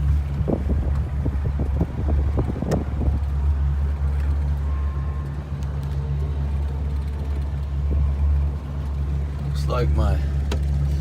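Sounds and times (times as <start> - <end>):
boat engine idling: 0.0 - 11.0.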